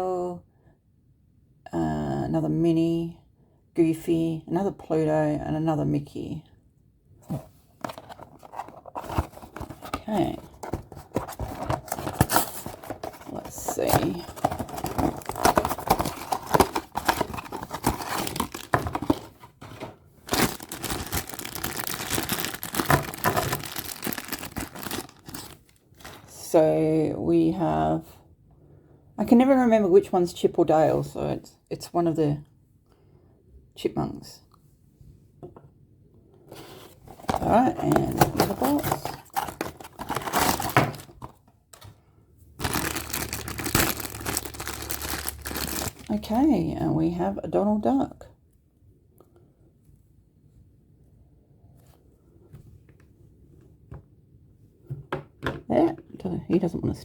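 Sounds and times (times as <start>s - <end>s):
packaging torn and crinkled: 14.1s - 19.1s, 20.2s - 25.8s, 42.6s - 46.1s.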